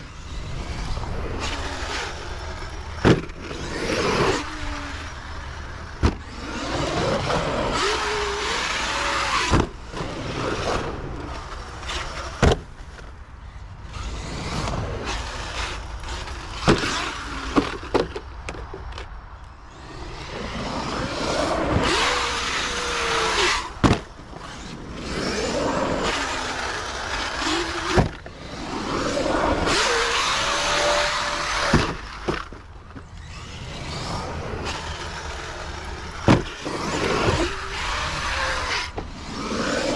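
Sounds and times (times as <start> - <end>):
electric motor whining: 0.0 - 18.0, 19.7 - 39.9
toy truck landing thuds: 3.0 - 3.4, 9.4 - 9.8, 16.2 - 19.1, 23.8 - 24.2, 27.6 - 28.3, 31.6 - 33.1, 36.2 - 37.6.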